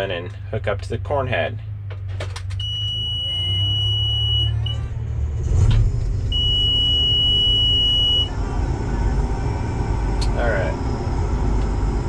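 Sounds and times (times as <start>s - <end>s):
combine engine rumble: 0.0s - 12.0s
high-pitched warning beeper: 2.6s - 4.9s, 6.3s - 8.3s.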